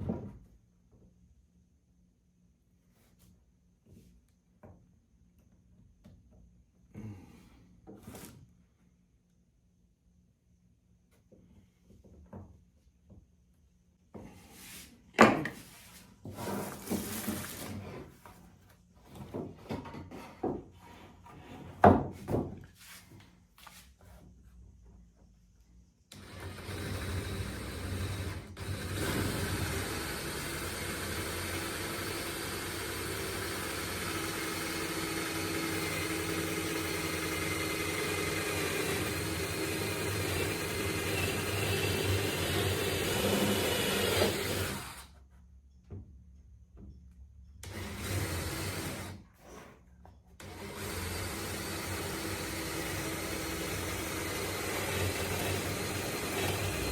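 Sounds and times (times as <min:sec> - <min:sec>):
power tool motor running: 0:26.1 - 0:45.1, 0:47.6 - 0:49.2, 0:50.4 - 0:56.9.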